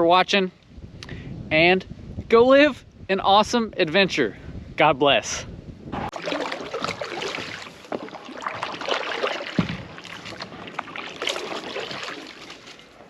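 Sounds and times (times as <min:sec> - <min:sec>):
water splashing around kayak: 0:06.0 - 0:13.0
hollow knock on hull: 0:09.5 - 0:10.4.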